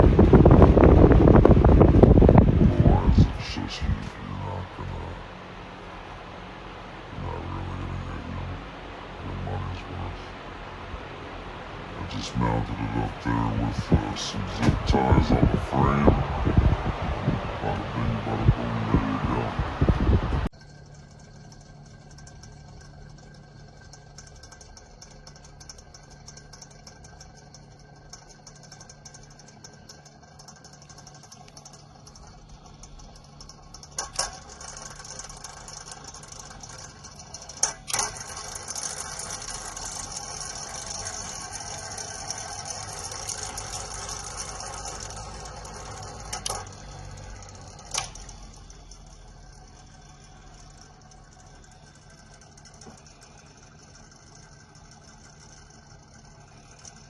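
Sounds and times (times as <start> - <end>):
fan humming and rattling: 0.0 - 57.0
sharp clicks: 20.4 - 49.7.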